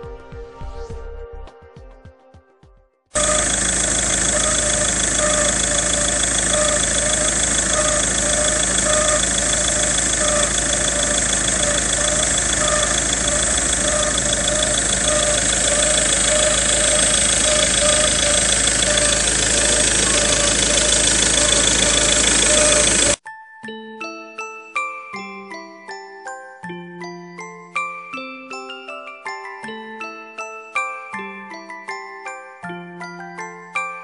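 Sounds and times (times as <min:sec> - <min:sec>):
diesel engine idling: 0:03.2 - 0:23.2
pulsing pulley noise: 0:03.2 - 0:23.2.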